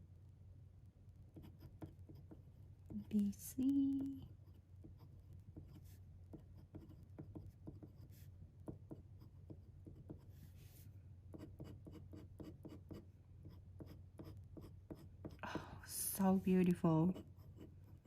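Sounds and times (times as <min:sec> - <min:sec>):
low steady hum: 0:00.0 - 0:18.0
pen scratching on paper: 0:01.3 - 0:02.4, 0:04.0 - 0:10.5, 0:11.3 - 0:15.4, 0:17.1 - 0:18.0.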